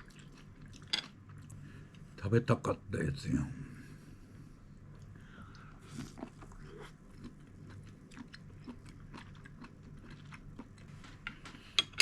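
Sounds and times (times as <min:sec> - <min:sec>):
person chewing crunchy food: 0:00.0 - 0:01.6, 0:04.9 - 0:11.8
low steady hum: 0:00.0 - 0:12.0.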